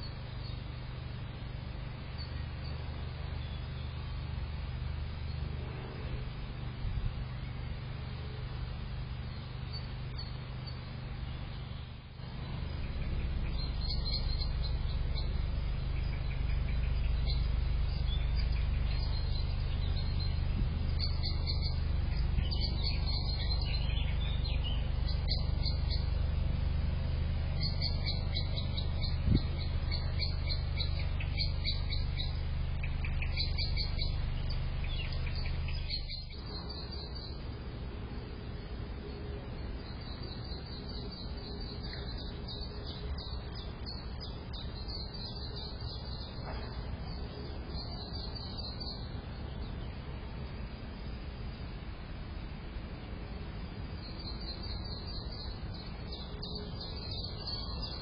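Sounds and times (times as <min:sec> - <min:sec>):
low steady hum: 0:00.0 - 0:58.0
small birds chirping: 0:00.0 - 0:58.0.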